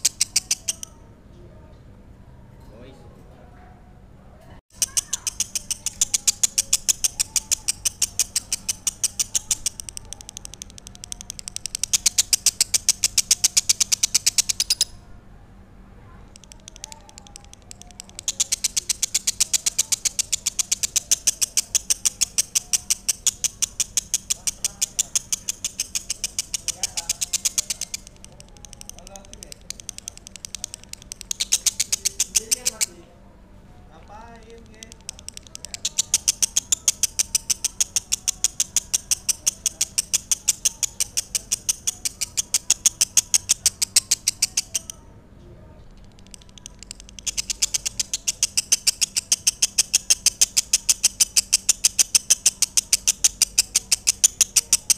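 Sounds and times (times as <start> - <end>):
lovebird chirping rapidly: 0.0 - 1.0, 4.7 - 15.0, 16.3 - 33.0, 34.6 - 45.0, 46.1 - 54.9.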